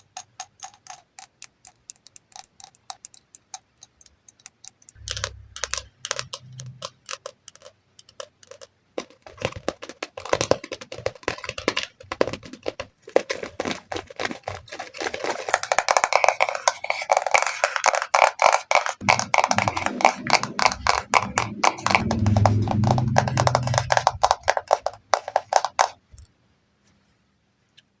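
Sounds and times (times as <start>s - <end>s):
rapid tapping on make-up products: 0.0s - 26.0s
deeper knocks: 19.0s - 25.5s.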